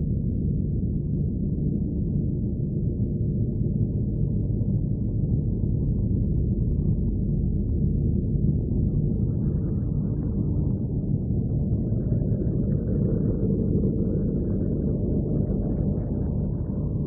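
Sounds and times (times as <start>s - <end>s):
deep rumbling drone: 0.0s - 17.0s.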